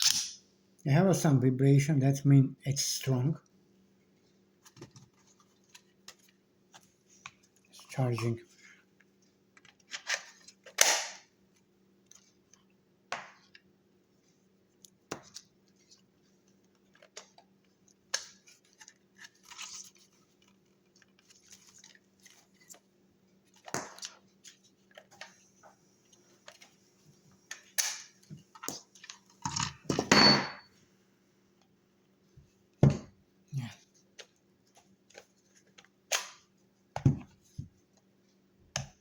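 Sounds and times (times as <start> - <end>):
plastic packaging handled: 18.3 - 25.2.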